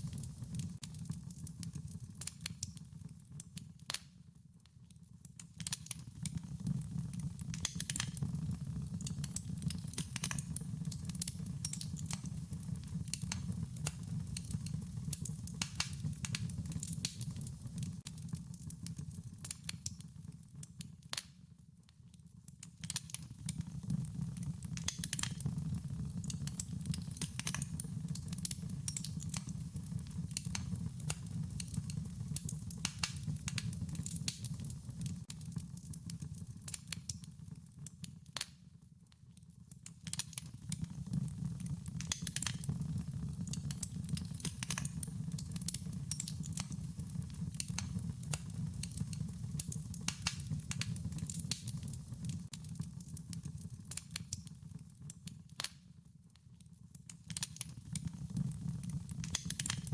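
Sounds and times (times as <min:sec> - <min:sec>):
wood fire crackling: 0:00.0 - 0:04.2, 0:05.2 - 0:21.4, 0:22.6 - 0:38.6, 0:39.6 - 0:55.9, 0:57.0 - 0:59.9.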